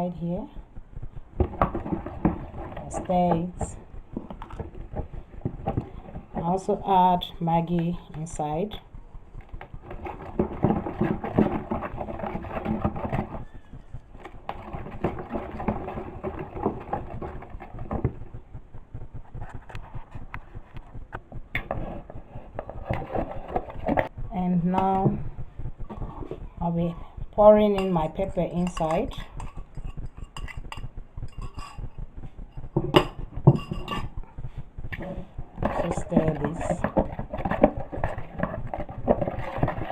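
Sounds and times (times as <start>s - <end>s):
spoon stirring oil in a bowl: 27.7s - 31.9s
spoon scraping against bowl: 28.6s - 31.9s.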